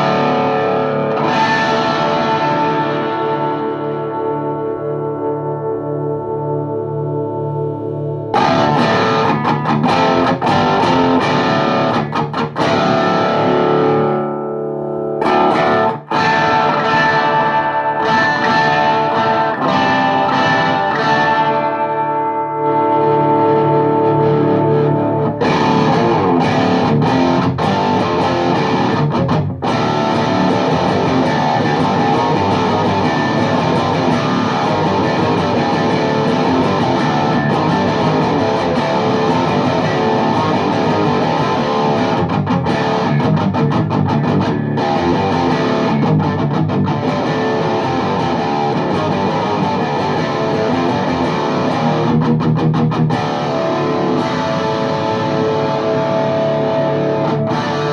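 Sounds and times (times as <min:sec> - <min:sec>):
electric guitar riffing: 0:00.0 - 0:57.9.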